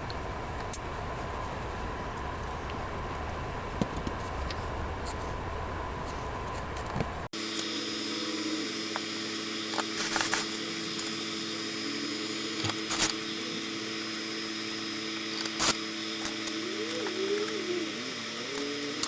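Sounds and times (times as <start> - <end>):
faint high whine: 0.0 - 19.0
steady hum of even tones: 7.3 - 19.0.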